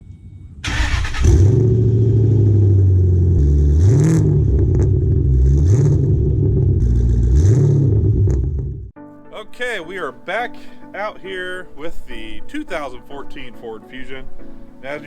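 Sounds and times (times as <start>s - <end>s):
car engine starting and revving: 0.6s - 8.9s.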